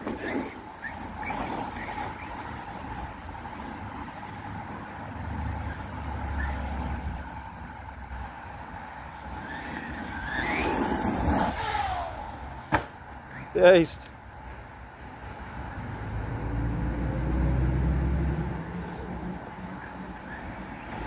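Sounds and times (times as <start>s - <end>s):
rc truck motor whine: 0.0s - 4.4s, 5.5s - 7.5s, 8.4s - 13.7s, 20.1s - 21.0s
steady outdoor noise: 0.0s - 21.0s.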